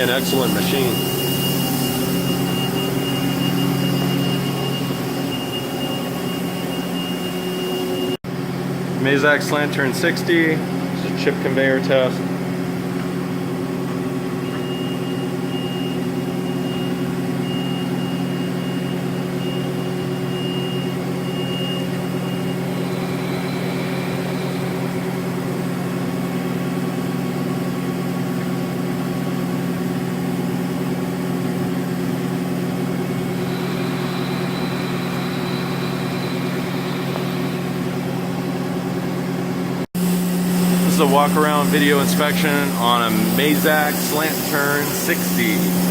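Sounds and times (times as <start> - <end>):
faint high whine: 0.0 - 8.2, 14.4 - 26.3, 32.4 - 39.0, 40.1 - 45.9
machine hum: 0.0 - 45.9.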